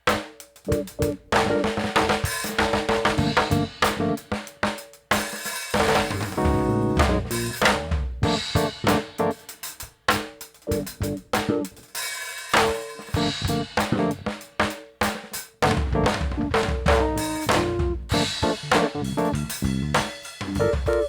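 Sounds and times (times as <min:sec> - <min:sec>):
drum kit playing fills: 0:00.0 - 0:21.0
keyboard chords: 0:00.7 - 0:02.1, 0:03.2 - 0:04.4, 0:06.1 - 0:09.6, 0:10.7 - 0:11.9, 0:13.2 - 0:14.4, 0:15.7 - 0:21.0.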